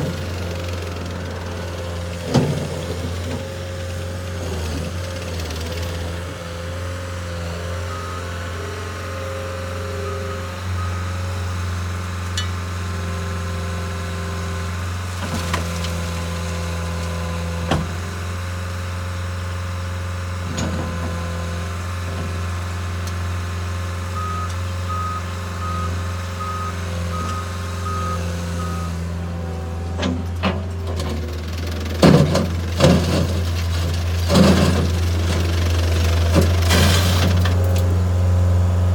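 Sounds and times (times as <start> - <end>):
diesel loader engine running: 0.0 - 38.9
backup alarm beeping: 7.3 - 11.8, 24.1 - 29.5.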